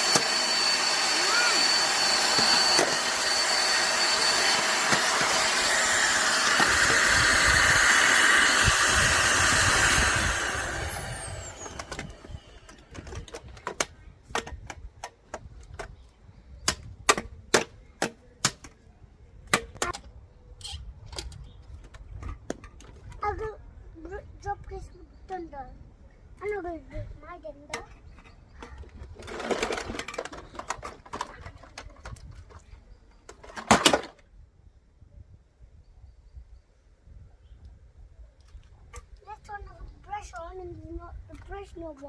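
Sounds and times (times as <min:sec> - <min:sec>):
vacuum cleaner motor: 0:00.0 - 0:13.4.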